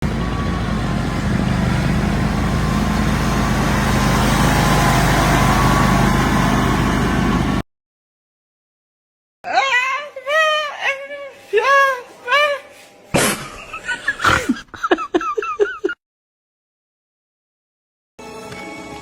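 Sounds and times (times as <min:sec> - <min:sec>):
engine running with low hum: 0:00.0 - 0:07.6.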